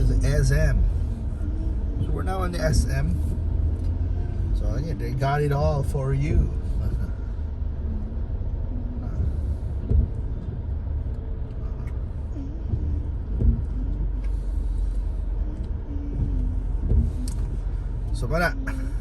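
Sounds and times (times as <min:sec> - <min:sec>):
vehicle rumbling in traffic: 0:00.0 - 0:19.0
brief thumps: 0:09.2 - 0:18.1.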